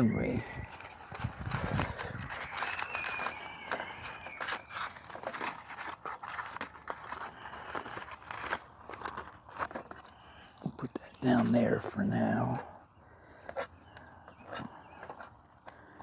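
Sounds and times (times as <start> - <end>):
aluminium foil crinkling: 0.0 - 12.7.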